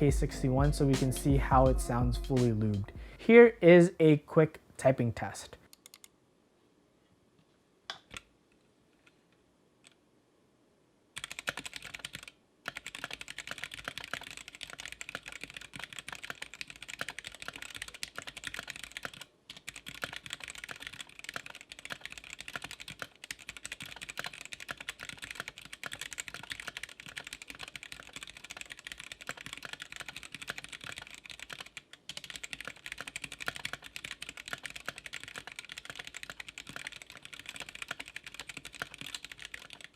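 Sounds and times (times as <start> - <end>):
mechanical keyboard typing: 11.2 - 39.9.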